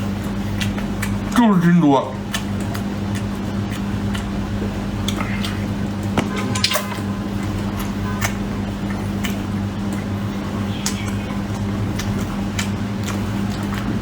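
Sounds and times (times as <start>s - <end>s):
chewing and mouth smacking: 0.0s - 1.4s, 2.1s - 14.0s.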